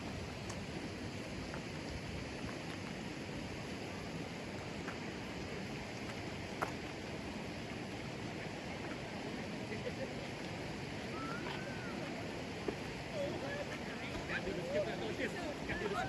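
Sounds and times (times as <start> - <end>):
fast-flowing river rushing: 3.2 - 16.0.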